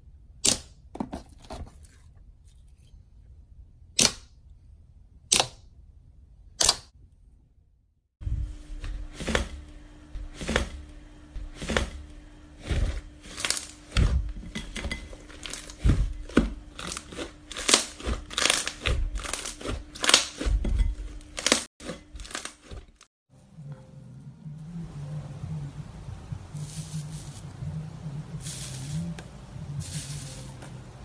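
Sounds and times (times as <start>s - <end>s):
slime popping and crackling: 16.6s - 20.5s.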